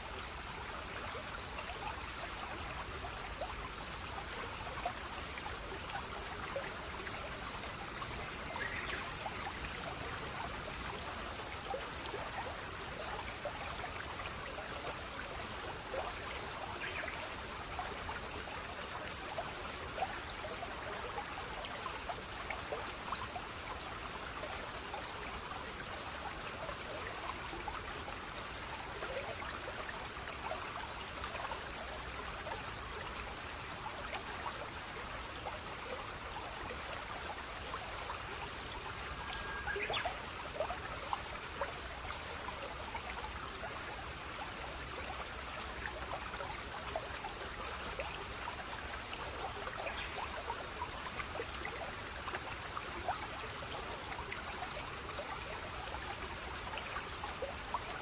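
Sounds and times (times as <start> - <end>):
water trickling with splashes: 0.0 - 58.0.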